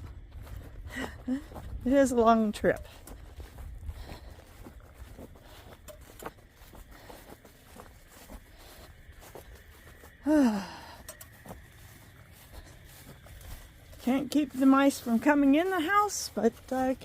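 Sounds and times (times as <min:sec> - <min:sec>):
faint footsteps outdoors: 0:00.0 - 0:17.0
woman sighing: 0:10.2 - 0:11.2.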